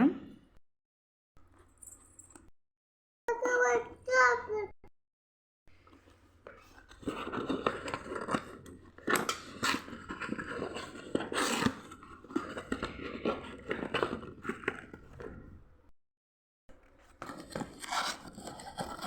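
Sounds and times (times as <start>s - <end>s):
packaging crinkling and rustling: 6.7s - 15.2s.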